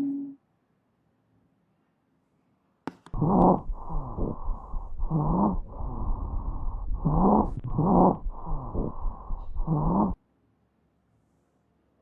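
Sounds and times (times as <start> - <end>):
wheezing breaths through stethoscope: 3.2 - 10.2.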